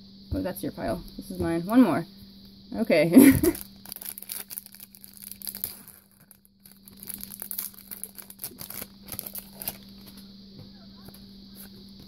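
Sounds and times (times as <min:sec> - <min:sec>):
foil wrapper tearing and crinkling: 0:03.4 - 0:10.2.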